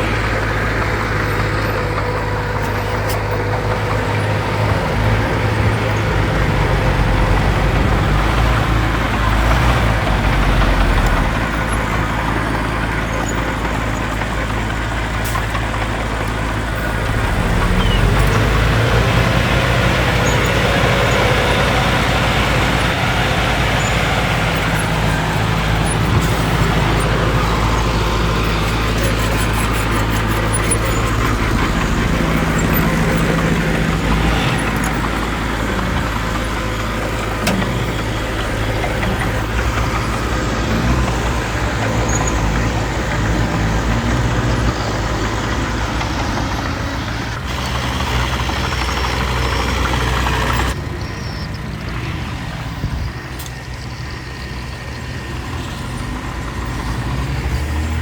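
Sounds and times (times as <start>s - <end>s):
diesel engines of heavy machinery: 0.0s - 58.0s.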